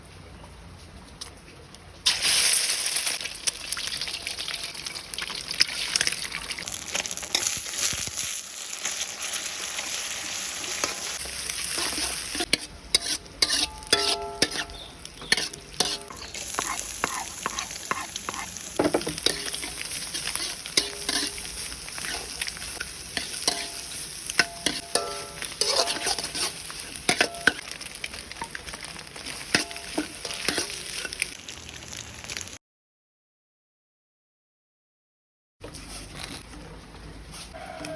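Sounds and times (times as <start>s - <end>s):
food sizzling in hot oil: 2.1s - 32.6s
spatula scraping a pan: 10.7s - 27.7s, 28.4s - 31.3s
utensil clinking on pan: 11.8s - 16.2s, 18.8s - 21.5s, 22.1s - 27.7s, 29.5s - 31.3s.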